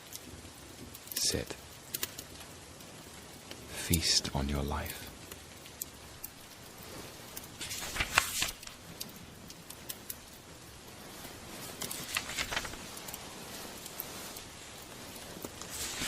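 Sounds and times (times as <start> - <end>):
sharp crackles: 0.0 - 16.0
steady soft hiss: 0.0 - 16.0.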